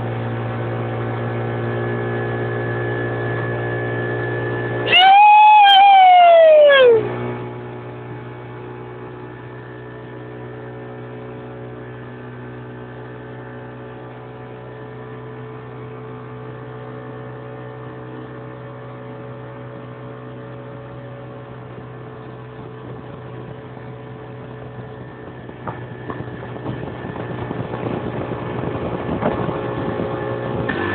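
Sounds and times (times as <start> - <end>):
loud falling tone: 4.8 - 7.2.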